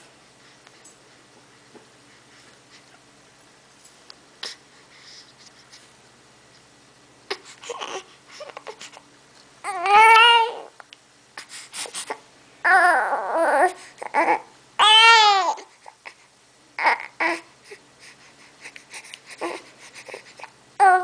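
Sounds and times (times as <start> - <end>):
baby crying: 7.3 - 8.9, 9.6 - 10.7, 12.6 - 15.7, 16.8 - 17.5, 19.4 - 20.2, 20.8 - 21.0
baby babbling: 9.6 - 10.7, 12.6 - 15.7, 16.8 - 17.5, 20.8 - 21.0.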